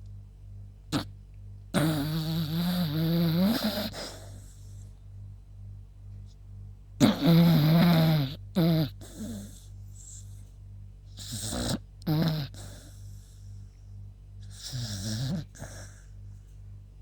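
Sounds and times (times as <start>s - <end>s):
dog snoring: 1.7s - 4.9s, 7.0s - 10.4s, 11.1s - 13.5s, 14.4s - 16.2s
dog snorting: 1.8s - 4.6s, 7.0s - 10.4s, 11.2s - 13.3s, 14.5s - 16.1s.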